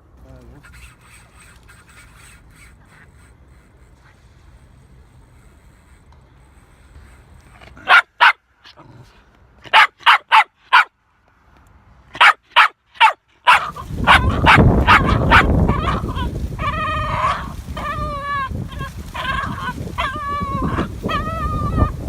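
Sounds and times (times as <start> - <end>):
dog barking: 7.8 - 8.4, 9.7 - 10.9, 12.2 - 16.2, 17.1 - 18.0.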